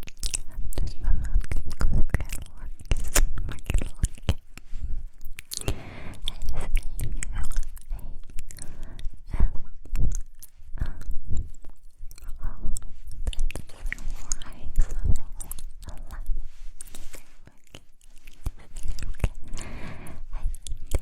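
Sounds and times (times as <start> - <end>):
wet mouth clicks and smacks: 0.0 - 16.1, 16.8 - 21.0.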